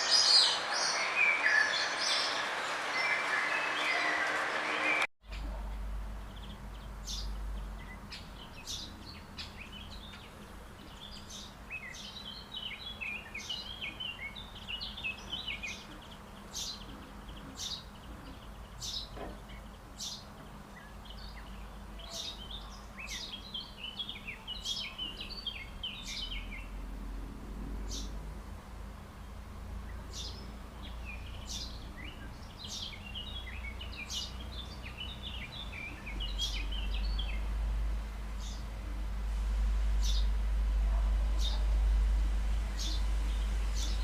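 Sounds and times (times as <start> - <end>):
songbirds chirping and twittering: 0.0 - 44.0
steady low rumble: 5.3 - 11.3, 35.4 - 44.0.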